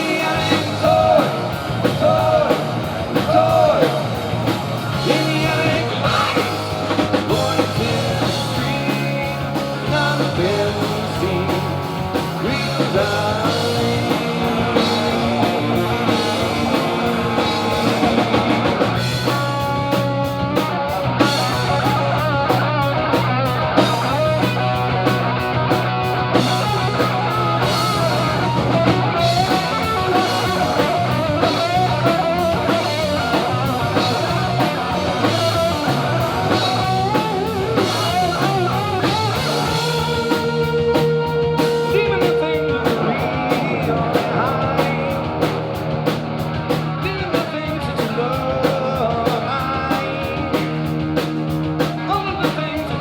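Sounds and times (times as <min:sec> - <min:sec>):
bass guitar: 0:00.0 - 0:53.0
drum kit: 0:00.0 - 0:53.0
electric guitar lead with bent notes: 0:00.0 - 0:53.0.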